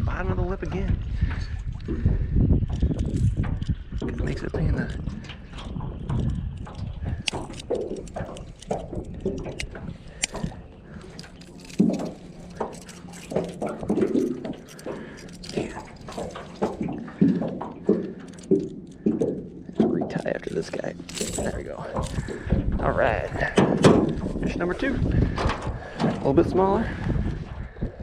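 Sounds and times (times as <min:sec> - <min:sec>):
clicks and knocks in a boat: 0:00.0 - 0:28.0
water drips and splashes: 0:01.1 - 0:22.6.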